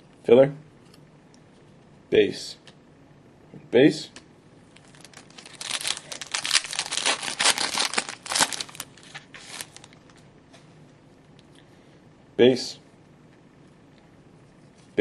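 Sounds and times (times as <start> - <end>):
wrapper crinkling and tearing: 4.8 - 10.0.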